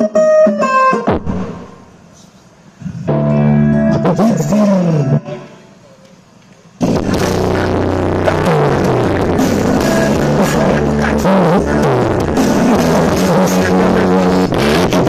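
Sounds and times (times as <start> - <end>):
rock band with drums and bass: 6.8 - 15.0.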